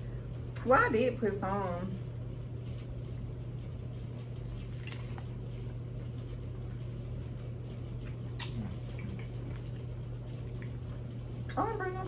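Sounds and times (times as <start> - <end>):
steady low hum: 0.0 - 12.0
person chewing food: 4.2 - 11.1.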